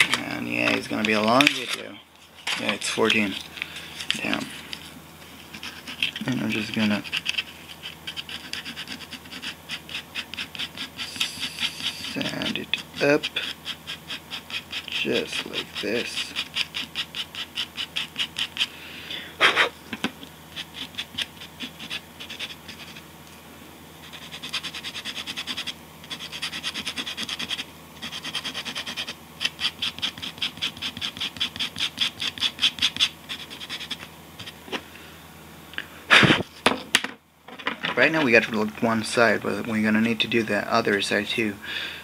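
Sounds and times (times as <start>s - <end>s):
sandpaper rubbing on blade: 5.4s - 18.7s, 20.5s - 23.0s, 24.0s - 34.6s.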